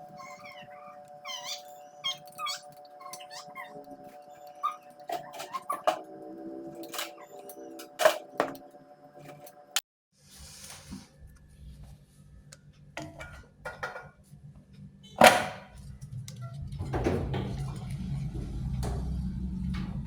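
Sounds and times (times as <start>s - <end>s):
low machine hum: 14.3s - 20.0s
sharp knocks and clanks: 15.2s - 15.8s, 16.8s - 20.0s.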